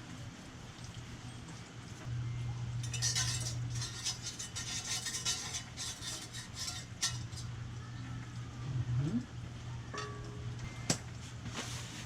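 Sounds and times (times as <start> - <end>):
steady low hum: 1.7 - 12.0
metal parts scraping and clinking: 2.8 - 7.5.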